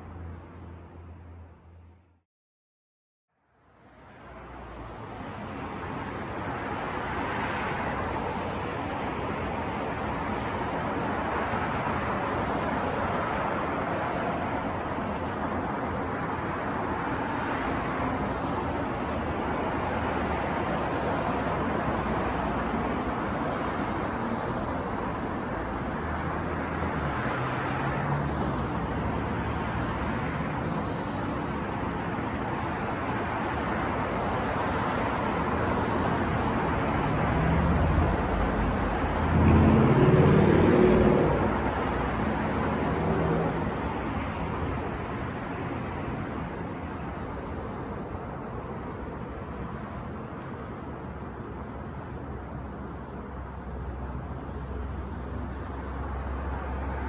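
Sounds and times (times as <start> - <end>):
passing cars: 3.6 - 57.0
vehicle engine passing close: 37.0 - 43.9.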